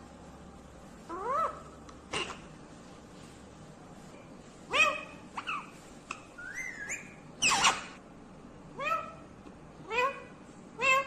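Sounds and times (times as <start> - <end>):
parakeet calling: 1.1 - 2.4, 4.7 - 8.0.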